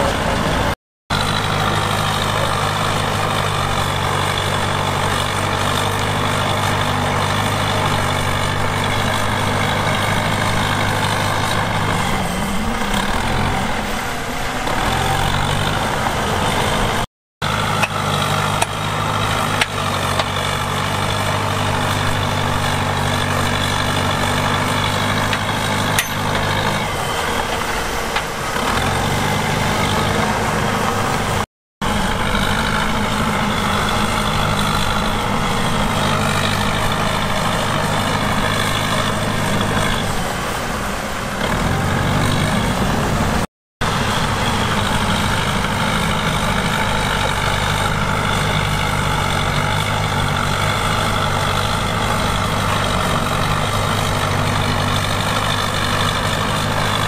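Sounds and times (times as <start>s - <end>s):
heavy diesel engine running: 0.0s - 57.0s
sharp metal clanks: 25.3s - 26.7s.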